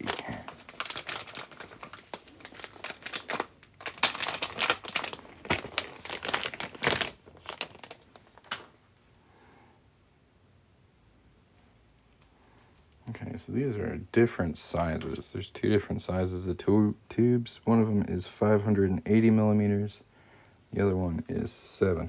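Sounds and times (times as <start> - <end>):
plastic packaging crinkling: 0.0 - 8.8.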